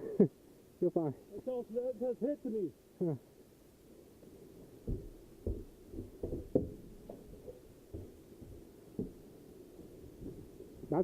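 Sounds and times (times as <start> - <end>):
muffled low thumps: 4.8 - 9.3.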